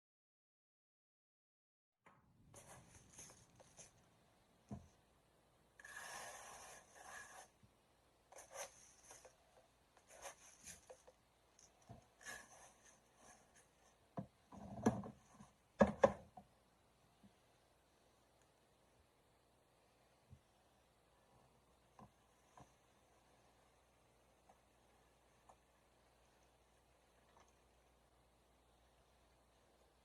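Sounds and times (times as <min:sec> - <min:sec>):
objects rubbing and scraping: 0:05.8 - 0:07.6.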